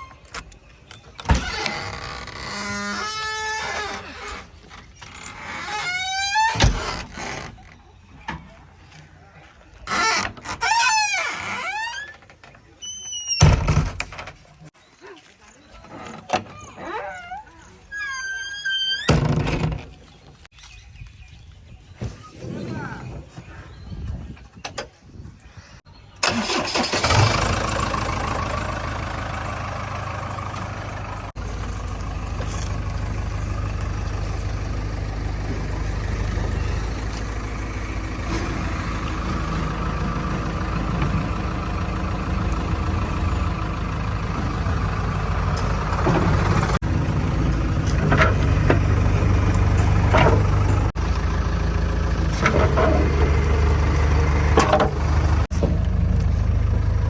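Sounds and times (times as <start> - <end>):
heavy diesel engine running: 26.2 - 57.0.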